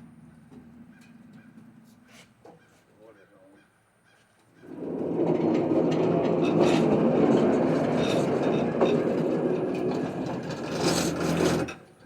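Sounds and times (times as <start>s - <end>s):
sawmill engine running: 4.7s - 11.7s.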